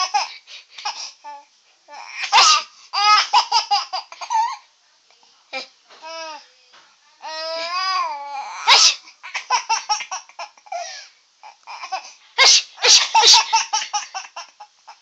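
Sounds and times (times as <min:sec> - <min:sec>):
baby laughing: 0:02.0 - 0:04.6, 0:08.6 - 0:10.7, 0:11.7 - 0:15.0
person fake sneezing: 0:12.4 - 0:13.6.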